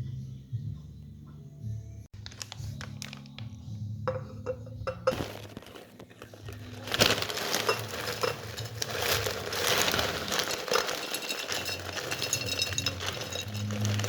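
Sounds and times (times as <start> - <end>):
crinkling and rustling: 2.2 - 4.2, 4.9 - 14.0.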